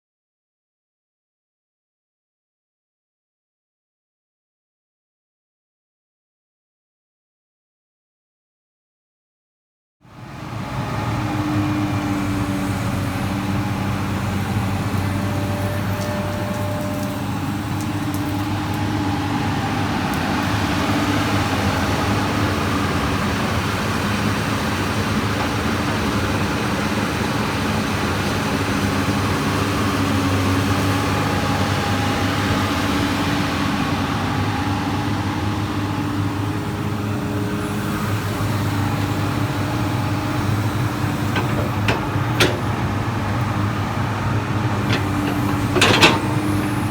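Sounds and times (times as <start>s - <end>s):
excavator diesel engine running: 10.2s - 46.9s.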